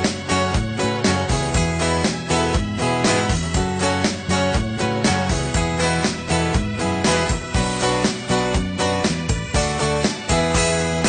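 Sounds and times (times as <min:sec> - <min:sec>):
guitar-led background music: 0:00.0 - 0:11.0.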